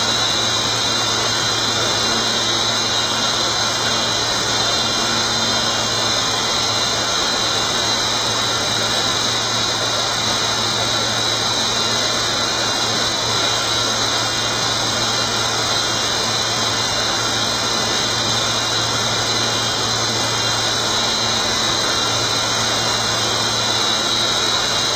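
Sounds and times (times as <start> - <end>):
router machine whirring: 0.0 - 24.9.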